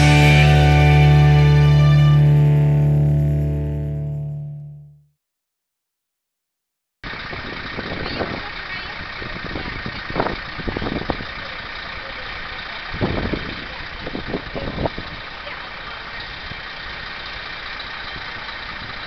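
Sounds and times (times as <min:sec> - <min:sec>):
engine hum: 0:00.0 - 0:05.0.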